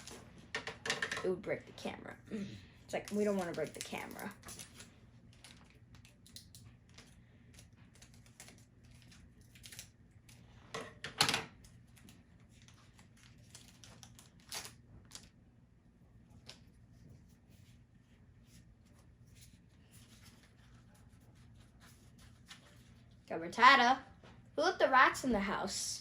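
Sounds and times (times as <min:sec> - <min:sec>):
foil wrapper crinkling: 0:02.9 - 0:10.6, 0:11.6 - 0:15.4.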